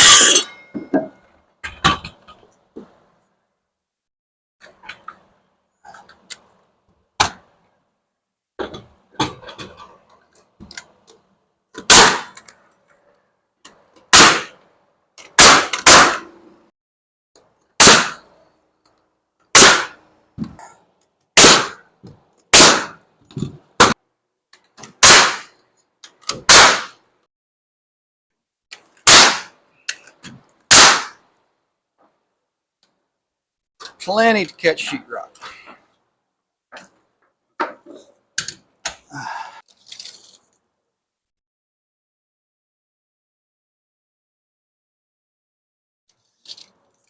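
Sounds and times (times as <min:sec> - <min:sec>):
nail gun firing: 0:11.9 - 0:12.4, 0:14.1 - 0:14.6, 0:15.4 - 0:16.3, 0:17.8 - 0:18.2, 0:19.6 - 0:20.0, 0:21.4 - 0:21.8, 0:22.5 - 0:23.0, 0:25.0 - 0:25.5, 0:26.3 - 0:27.0, 0:29.0 - 0:29.5, 0:30.7 - 0:31.2.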